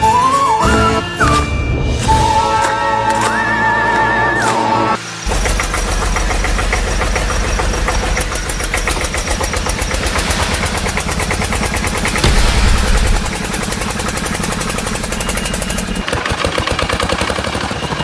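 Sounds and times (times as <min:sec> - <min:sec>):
tractor engine chugging: 0:05.2 - 0:18.0.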